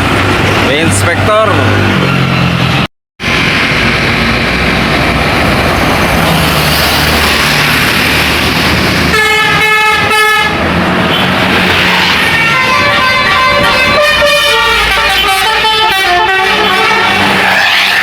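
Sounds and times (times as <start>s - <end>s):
bus driving past: 0.0s - 18.0s
multi-tone bus horn: 9.1s - 18.0s.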